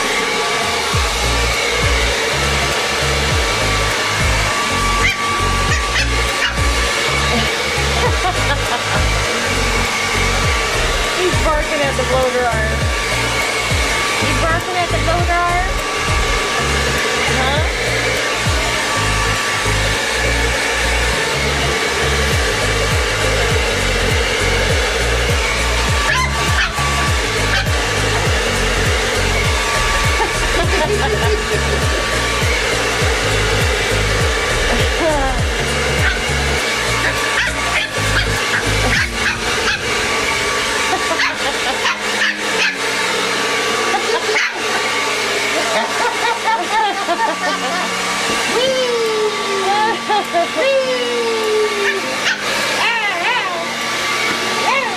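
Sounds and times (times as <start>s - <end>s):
blow dryer hissing: 0.0s - 54.9s
puppy barking: 5.0s - 6.6s, 26.1s - 26.8s, 36.0s - 36.2s, 37.0s - 40.0s, 41.1s - 42.9s, 44.2s - 44.7s, 51.8s - 52.5s.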